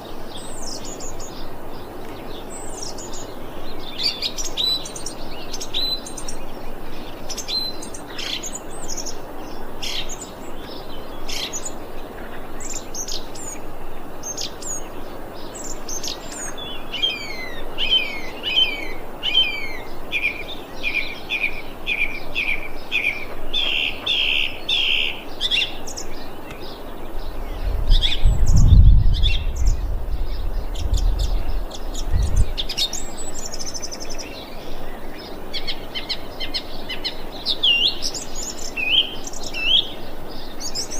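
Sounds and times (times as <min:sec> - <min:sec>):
low rumble: 0:27.3 - 0:32.6.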